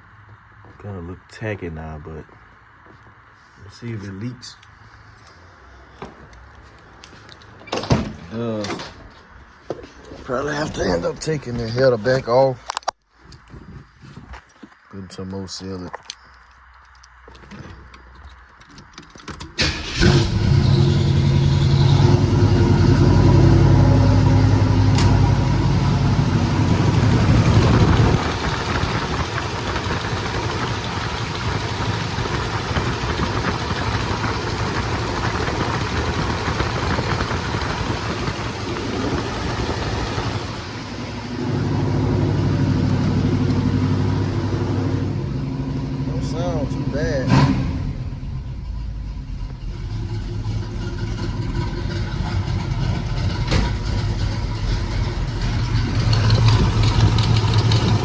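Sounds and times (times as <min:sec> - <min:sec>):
car engine cranking and starting: 0:17.9 - 0:58.0
engine idling: 0:19.6 - 0:58.0.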